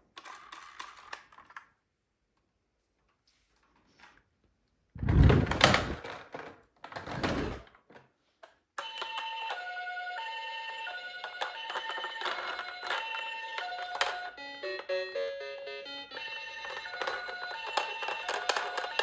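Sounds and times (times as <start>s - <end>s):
rough handling noise: 5.0s - 6.2s.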